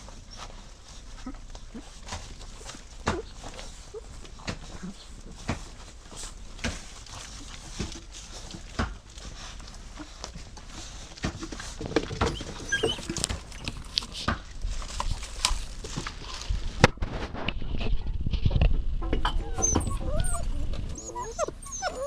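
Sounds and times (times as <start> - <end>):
dog moving about: 0.0 - 16.8.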